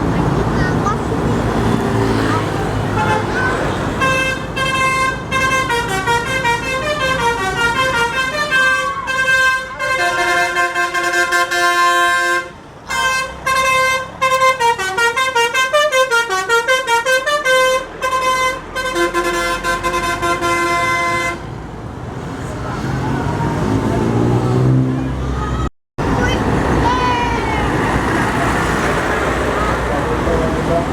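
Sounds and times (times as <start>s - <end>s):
musical bus horn: 2.9s - 21.5s.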